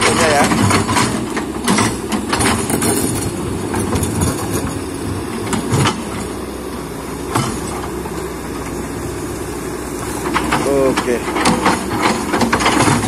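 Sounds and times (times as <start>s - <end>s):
metallic clanks and knocks: 0.0s - 6.3s, 10.1s - 13.0s
excavator diesel engine running: 0.0s - 13.0s.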